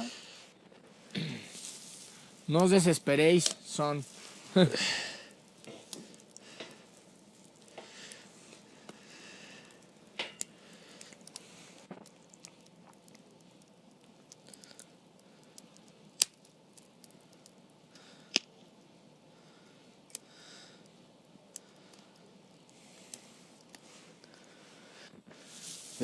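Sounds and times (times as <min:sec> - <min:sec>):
campfire crackling: 0:00.0 - 0:26.0
sharp fire pops: 0:01.1 - 0:18.6.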